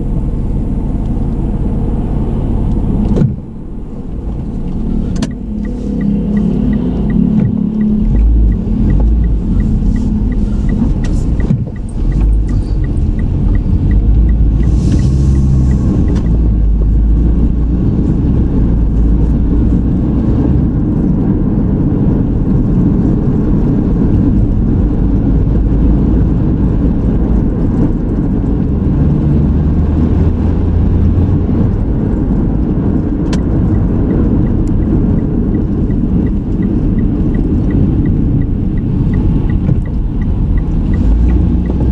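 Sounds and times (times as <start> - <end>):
light regular ticking: 0.0 - 17.3, 33.3 - 41.9
car engine and road rumble: 0.0 - 41.9.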